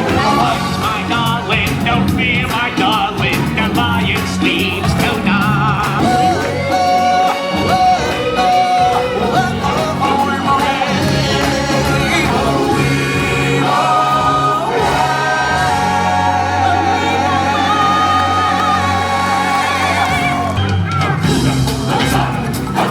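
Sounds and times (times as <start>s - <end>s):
voices singing together: 0.0s - 22.9s.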